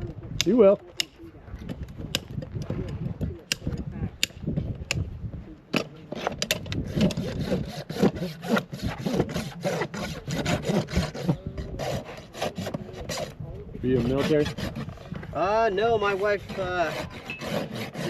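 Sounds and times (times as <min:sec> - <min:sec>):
rasp filing a hoof: 0:06.0 - 0:18.0.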